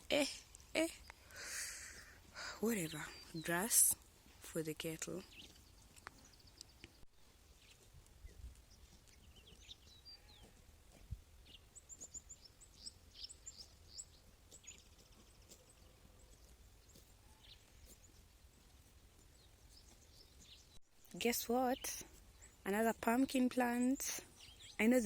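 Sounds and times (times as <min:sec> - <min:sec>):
small birds chirping: 0:00.0 - 0:25.0.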